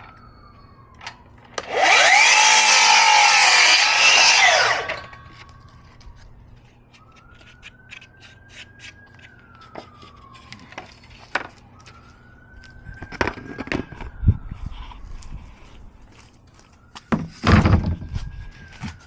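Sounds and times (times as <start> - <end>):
siren wailing: 0.0 - 19.0.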